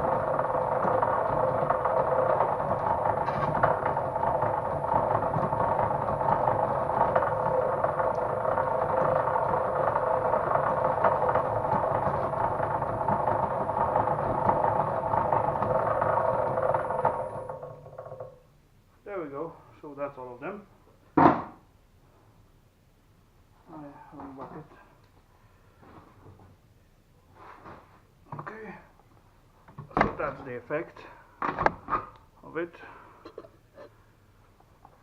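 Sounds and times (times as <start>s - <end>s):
power tool motor whining: 0.0s - 17.6s.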